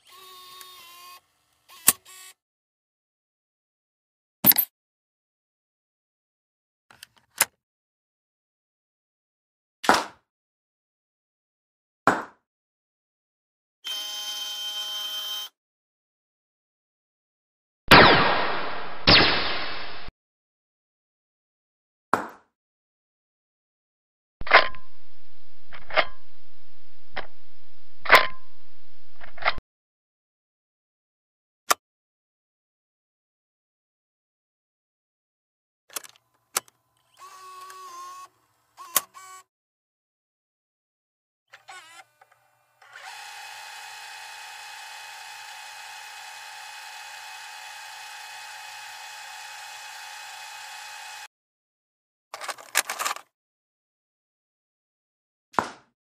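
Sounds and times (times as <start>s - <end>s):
small camera motor whirring: 0.0s - 2.4s, 13.9s - 15.6s, 36.3s - 39.5s, 41.5s - 51.3s
background hiss and hum: 24.8s - 29.6s.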